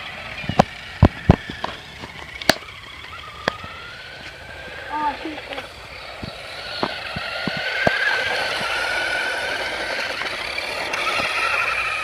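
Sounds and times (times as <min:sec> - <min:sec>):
electric motor whining: 0:00.0 - 0:12.0
gravel ticks and clatters: 0:00.0 - 0:12.0.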